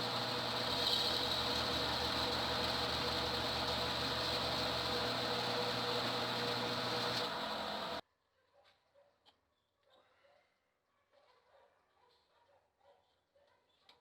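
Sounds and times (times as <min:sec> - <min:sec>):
lathe motor hum: 0:00.0 - 0:08.0.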